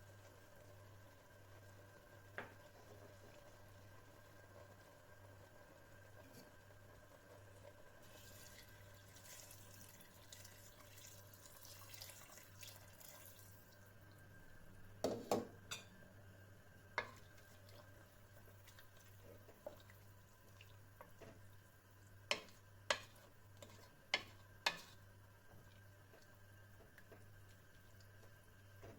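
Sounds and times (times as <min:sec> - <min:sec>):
water trickling: 0:08.1 - 0:14.0.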